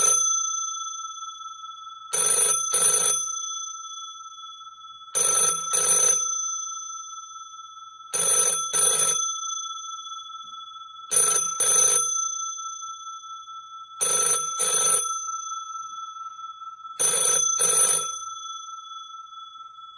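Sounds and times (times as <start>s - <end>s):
telephone bell double ring: 2.1s - 3.4s, 5.2s - 6.3s, 8.1s - 9.7s, 11.1s - 12.5s, 14.0s - 15.7s, 17.0s - 18.9s.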